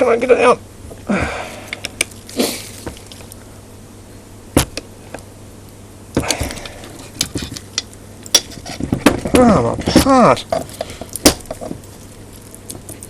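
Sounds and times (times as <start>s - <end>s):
hand tools clicking and knocking: 6.2s - 11.9s.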